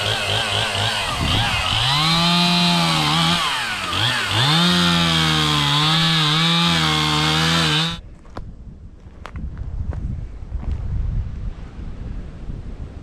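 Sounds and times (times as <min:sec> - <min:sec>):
chainsaw cutting: 0:00.0 - 0:08.0
wind noise on microphone: 0:00.8 - 0:03.6, 0:08.0 - 0:13.0.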